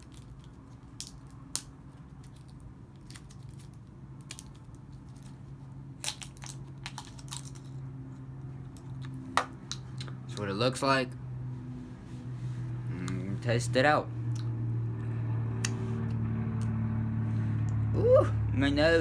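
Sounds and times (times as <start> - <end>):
low hum: 4.6 - 19.0.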